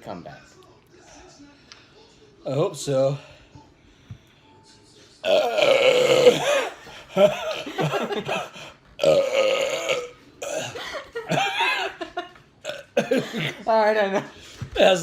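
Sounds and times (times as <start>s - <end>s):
person burping loudly: 5.2s - 11.9s, 12.6s - 13.6s.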